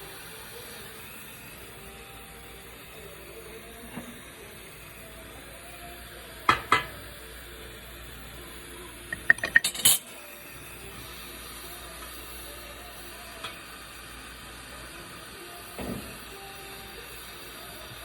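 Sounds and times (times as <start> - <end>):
metal tools clinking: 9.2 - 10.0.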